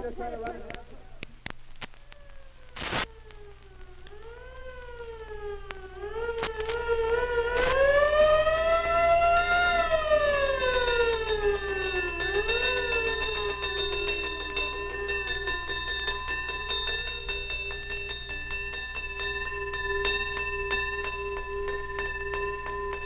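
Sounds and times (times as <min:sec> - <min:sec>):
siren wailing: 0:02.0 - 0:23.0.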